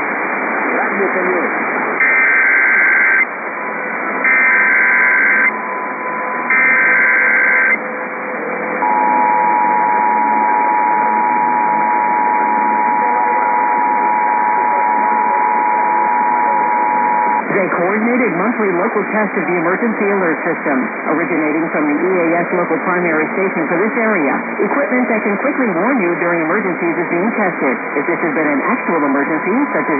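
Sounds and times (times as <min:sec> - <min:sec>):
radio hiss: 0:00.0 - 0:03.3, 0:08.8 - 0:29.9
screeching data tones: 0:02.0 - 0:03.3, 0:04.2 - 0:07.8, 0:08.8 - 0:17.5
two-tone attention signal: 0:04.3 - 0:07.8, 0:08.8 - 0:17.5.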